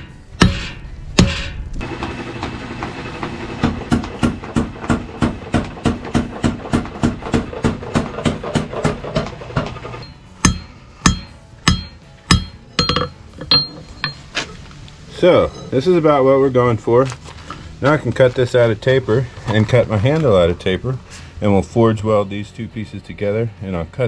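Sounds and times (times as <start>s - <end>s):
hammer striking steel on anvil: 0.0s - 14.3s.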